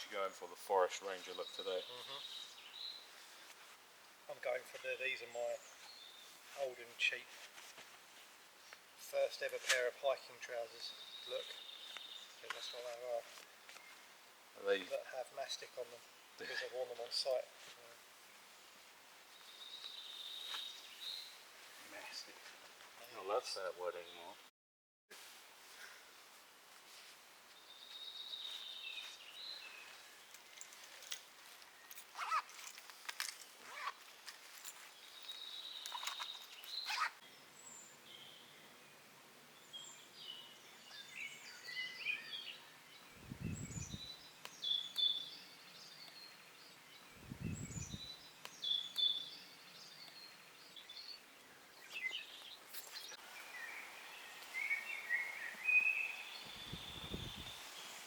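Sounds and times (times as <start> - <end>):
birds chirping and trilling: 0.0 - 3.5, 9.0 - 17.4, 19.3 - 22.4, 27.7 - 32.8, 33.4 - 58.0.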